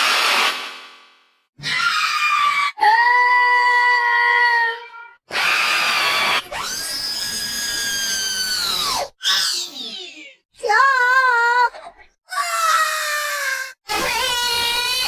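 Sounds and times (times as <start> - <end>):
rough hissing shriek: 0.0 - 0.8
high-pitched cartoon screams: 1.6 - 10.1, 12.3 - 15.0.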